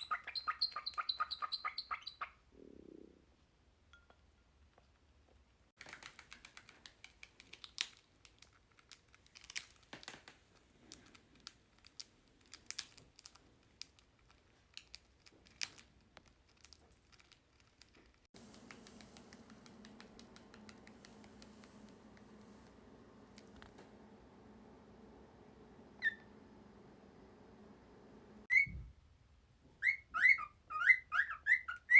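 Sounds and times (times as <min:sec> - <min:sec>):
bird beak clicking on food: 0:05.8 - 0:10.2, 0:10.8 - 0:22.0
low steady hum: 0:18.4 - 0:28.5.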